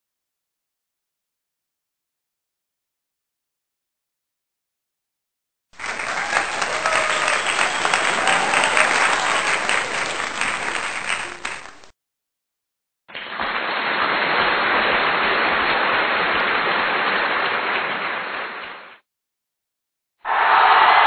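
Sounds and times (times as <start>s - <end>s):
applause: 5.8s - 11.9s, 13.1s - 19.0s, 20.3s - 21.0s.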